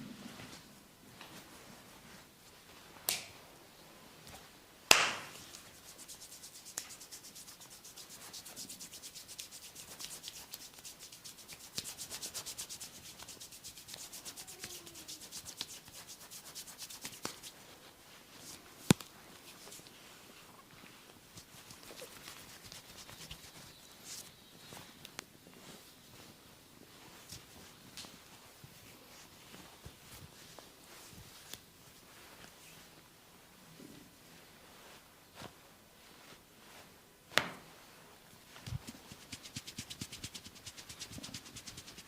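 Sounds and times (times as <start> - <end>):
sharp snaps: 3.1 - 3.4, 4.9 - 5.6
hands rubbing over skin: 5.3 - 20.2, 20.9 - 32.9, 38.5 - 42.0.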